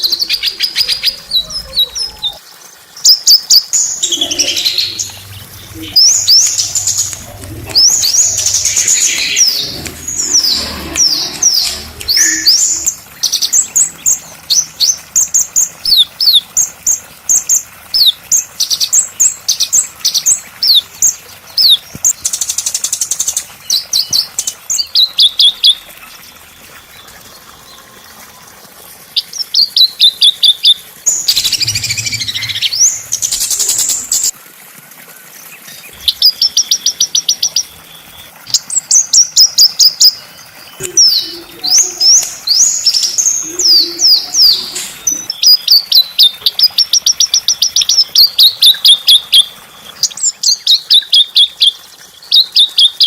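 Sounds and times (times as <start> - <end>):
songbirds chirping and trilling: 0.0 - 16.2, 23.0 - 34.3, 35.5 - 46.8.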